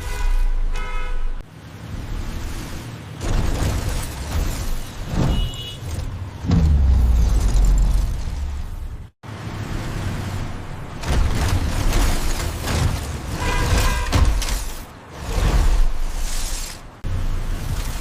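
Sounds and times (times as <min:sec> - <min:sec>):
heavy low vehicle rumble: 0:05.0 - 0:15.7.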